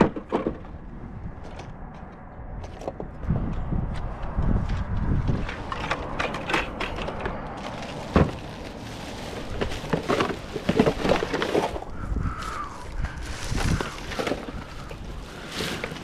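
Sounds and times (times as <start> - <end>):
footsteps crunching through brush: 7.5 - 16.0.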